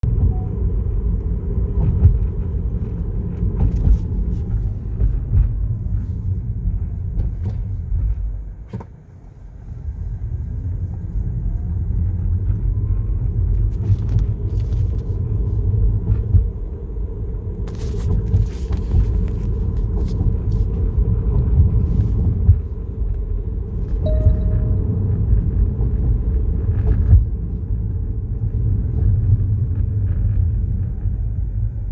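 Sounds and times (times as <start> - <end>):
low road rumble: 0.0 - 31.9
short beep: 0.2 - 0.6, 24.0 - 25.3.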